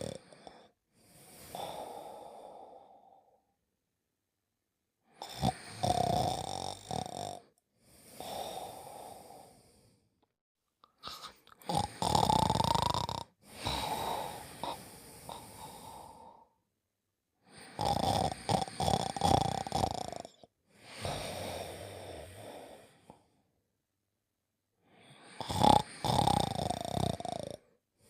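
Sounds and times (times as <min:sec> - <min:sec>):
cartoon character snoring: 0:00.0 - 0:00.7, 0:05.1 - 0:07.6, 0:08.2 - 0:09.6, 0:11.0 - 0:16.5, 0:17.5 - 0:23.2, 0:25.2 - 0:27.7.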